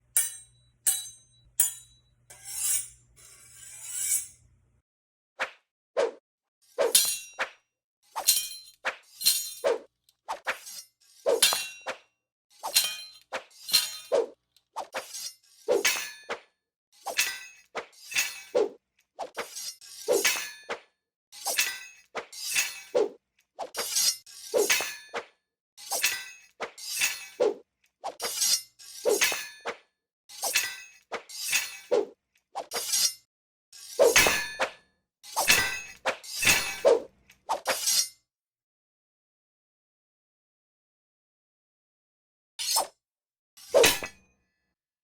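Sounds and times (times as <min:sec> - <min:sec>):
cutlery and knife clinking: 0:00.1 - 0:04.4, 0:08.2 - 0:09.6, 0:12.7 - 0:14.1, 0:28.2 - 0:29.6, 0:33.8 - 0:34.8, 0:35.4 - 0:36.8.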